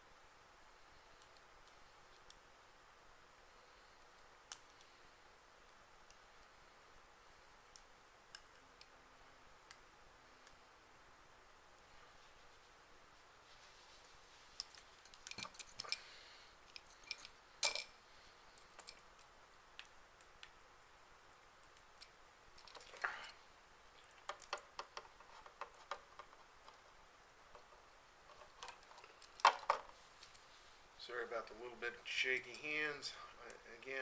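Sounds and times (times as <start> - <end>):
small parts clicking and tapping: 14.6 - 17.9, 18.5 - 20.6, 21.6 - 23.2, 24.0 - 26.8, 27.5 - 30.4.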